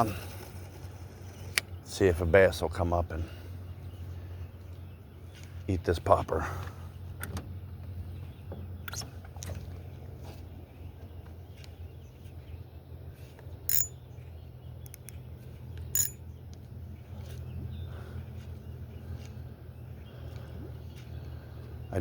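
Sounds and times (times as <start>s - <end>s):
fishing reel clicking: 13.7s - 13.9s, 16.0s - 16.2s.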